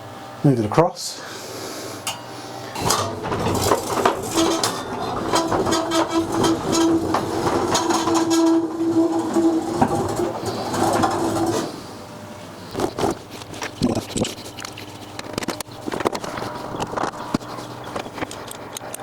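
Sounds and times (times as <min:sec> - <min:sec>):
steady hum: 0:00.0 - 0:18.8
dome rolling rumble: 0:02.7 - 0:12.1
rattling clicks: 0:02.8 - 0:11.8.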